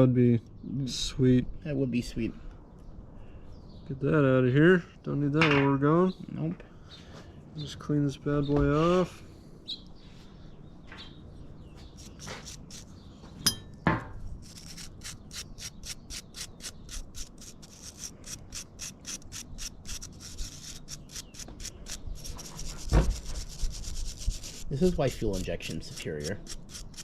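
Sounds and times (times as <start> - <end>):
brisk scrubbing strokes: 14.4 - 27.0.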